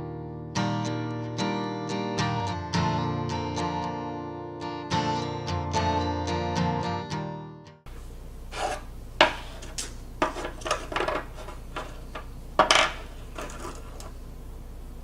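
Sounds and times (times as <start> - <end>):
acoustic guitar music: 0.0 - 7.9
low steady hum: 7.9 - 15.0
small hardware clinking and scraping: 8.6 - 14.2.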